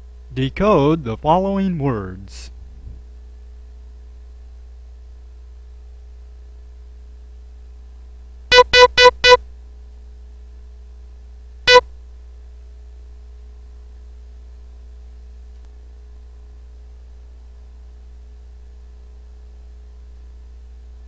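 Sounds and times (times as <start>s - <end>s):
morse code tone: 8.5s - 9.4s.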